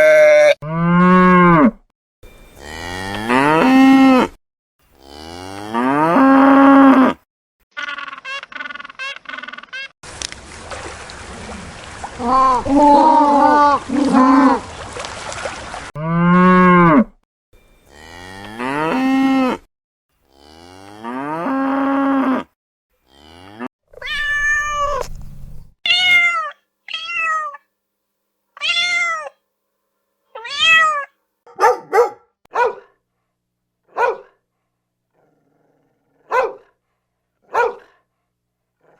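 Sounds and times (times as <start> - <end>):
cow mooing: 0.0 - 1.8, 2.6 - 4.4, 5.0 - 7.2, 16.0 - 17.2, 17.9 - 19.7, 20.3 - 22.5, 23.1 - 23.7
cat meowing: 24.0 - 25.0, 25.9 - 27.6, 28.6 - 29.4, 30.4 - 31.1.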